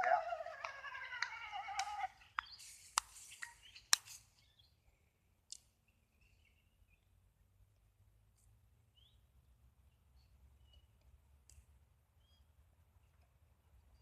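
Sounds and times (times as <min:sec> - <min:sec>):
faint bird chirps: 0:00.0 - 0:05.2, 0:05.8 - 0:07.2, 0:12.1 - 0:13.2.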